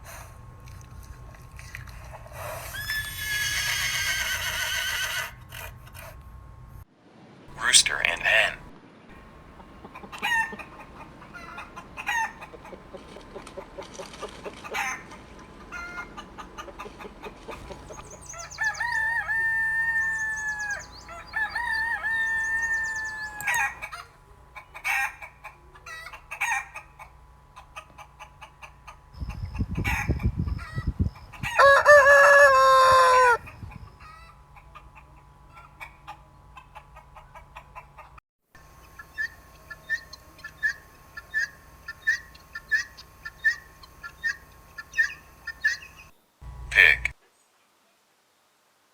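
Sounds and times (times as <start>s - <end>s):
hens clucking: 0.0s - 6.8s, 7.5s - 47.1s
rooster crowing: 2.4s - 6.0s, 9.9s - 12.8s, 14.6s - 24.2s, 31.4s - 34.2s.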